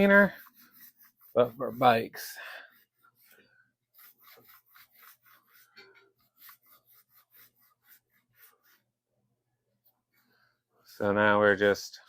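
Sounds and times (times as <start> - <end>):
rag scrubbing inside a rim: 0.0 - 8.9.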